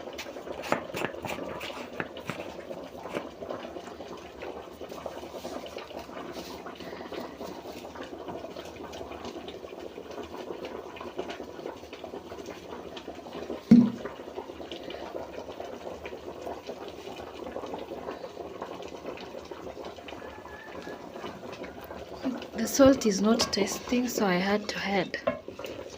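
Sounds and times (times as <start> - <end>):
stew bubbling in pot: 0.0 - 25.9
sharp loud knock: 13.7 - 14.0.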